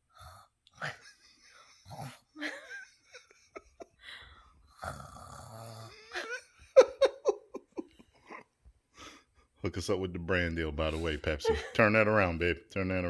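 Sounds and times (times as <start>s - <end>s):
person laughing: 0.8s - 4.2s, 5.9s - 8.5s, 10.9s - 11.8s
person making throaty rattle: 4.8s - 6.0s.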